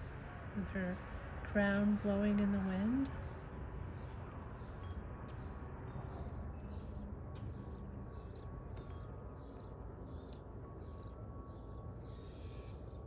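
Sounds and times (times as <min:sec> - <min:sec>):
songbird high chirp: 0:02.3 - 0:13.0.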